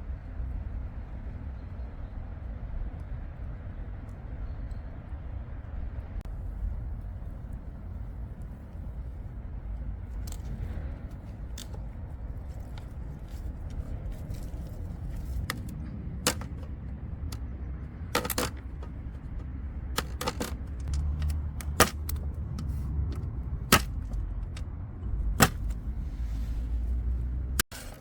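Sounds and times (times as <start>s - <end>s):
steady low rumble: 0.0s - 28.0s
sharp clicks or pops: 18.1s - 24.6s, 25.2s - 25.8s.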